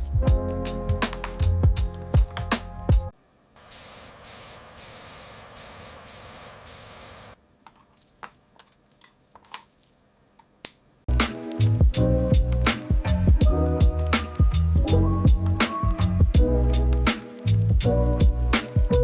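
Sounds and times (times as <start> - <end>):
background music: 0.0 - 3.2, 11.1 - 19.0
spray can hissing: 3.6 - 7.4.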